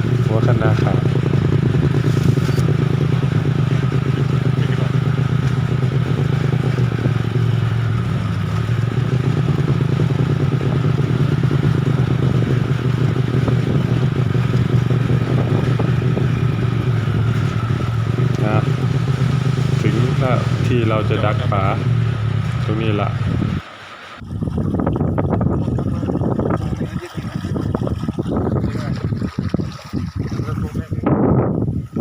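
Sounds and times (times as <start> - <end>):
clatter from rough road: 0.0 - 24.2
vehicle engine running steadily: 0.0 - 32.0.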